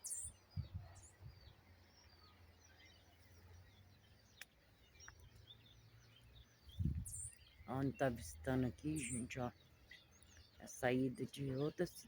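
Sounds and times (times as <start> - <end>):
small birds chirping: 0.0 - 12.0
soft low thumps: 6.7 - 7.2.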